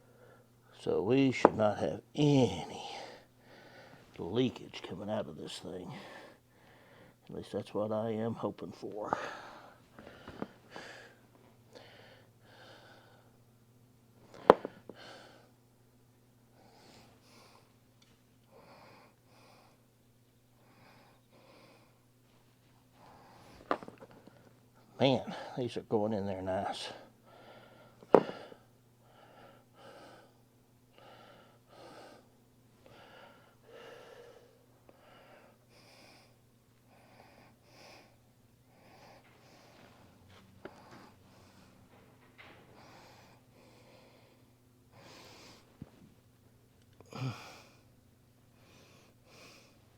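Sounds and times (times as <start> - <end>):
low electrical hum: 0.0 - 49.9
person breathing heavily: 2.7 - 4.1, 5.8 - 7.2, 9.1 - 13.4, 14.3 - 15.6, 22.9 - 24.5, 26.9 - 45.8, 47.0 - 47.9, 48.6 - 49.8.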